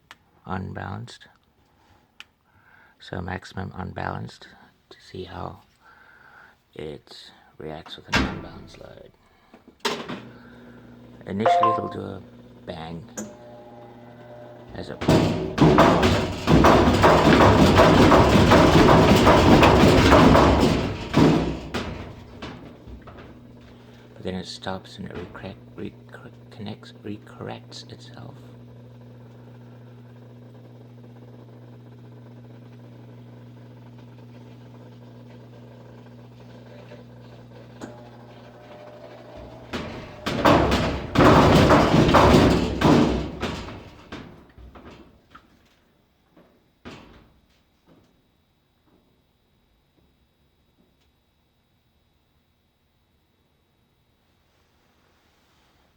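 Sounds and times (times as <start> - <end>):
washing machine drum banging: 11.5 - 11.9, 14.8 - 23.5, 39.4 - 45.1
washing machine humming: 13.3 - 45.3.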